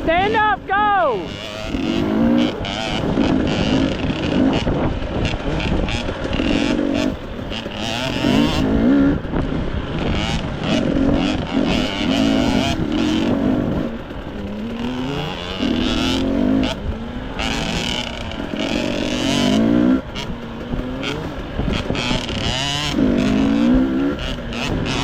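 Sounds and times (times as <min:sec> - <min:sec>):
dirt bike engine revving: 0:00.0 - 0:25.0.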